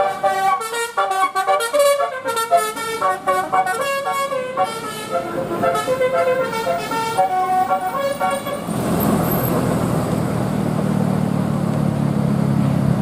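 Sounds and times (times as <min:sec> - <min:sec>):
musical air horn tune: 0:00.0 - 0:08.7
bus diesel engine humming: 0:00.0 - 0:13.0.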